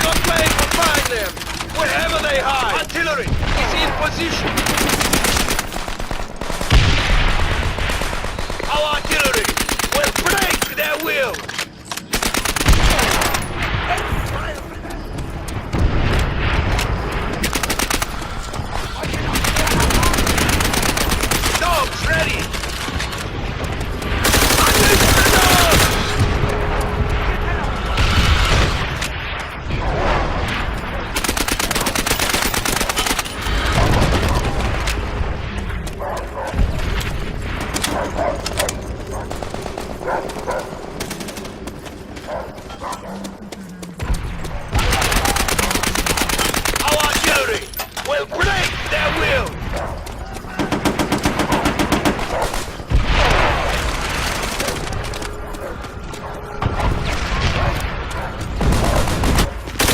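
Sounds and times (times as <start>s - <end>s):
machine-gun fire: 0.0s - 10.8s, 12.0s - 14.1s, 15.7s - 35.8s, 44.0s - 47.7s, 50.4s - 55.4s, 56.6s - 59.9s
rumbling battle din: 12.6s - 35.9s, 43.4s - 59.9s
rifle shots: 44.2s - 47.8s, 56.6s - 59.9s.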